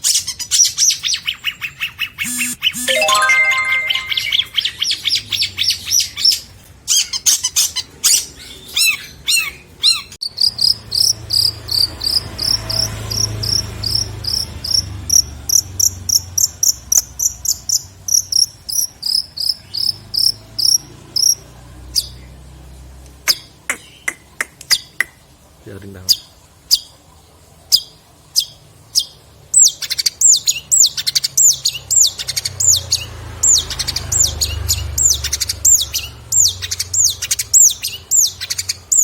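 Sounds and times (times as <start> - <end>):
sharp bird calls: 0.0 - 5.1.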